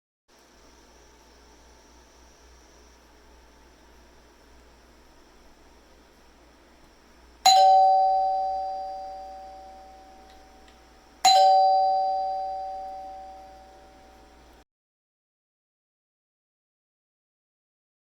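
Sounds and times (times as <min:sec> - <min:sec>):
doorbell chime: 0:07.5 - 0:10.6, 0:11.2 - 0:14.4.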